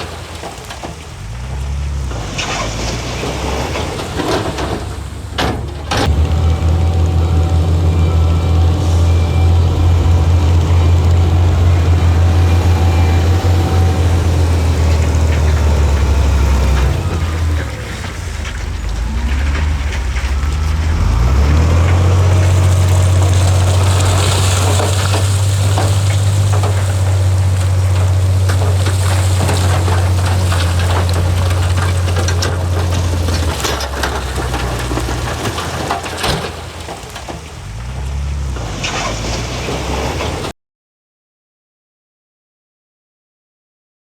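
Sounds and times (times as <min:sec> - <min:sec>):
clanks and knocks: 0:00.0 - 0:06.4, 0:11.5 - 0:40.2
heavy diesel engine droning: 0:00.0 - 0:40.5.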